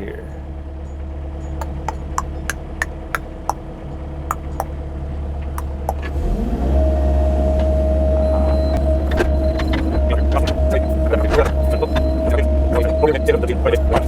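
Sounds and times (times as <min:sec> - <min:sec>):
sharp clicks: 0:01.6 - 0:03.0.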